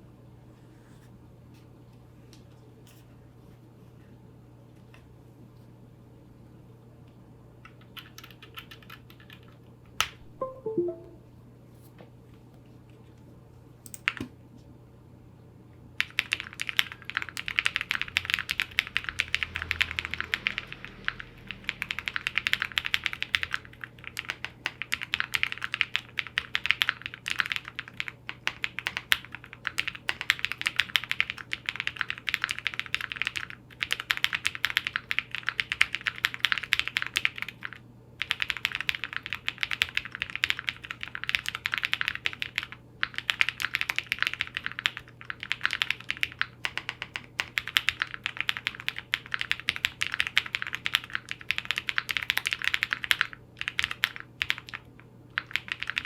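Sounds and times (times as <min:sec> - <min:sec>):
mechanical keyboard typing: 0:07.6 - 0:11.0, 0:16.0 - 0:56.0.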